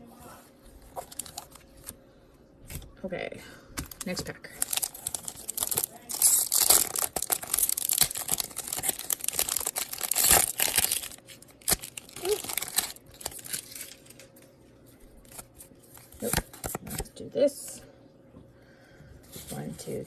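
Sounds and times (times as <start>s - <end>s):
foil wrapper crinkling: 0.9s - 2.0s, 3.8s - 14.5s.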